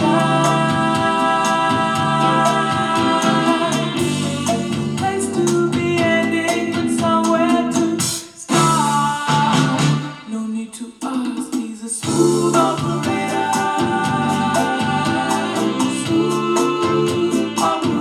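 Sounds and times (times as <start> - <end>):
person singing: 0.0 - 18.0
drum hits: 12.0 - 18.0.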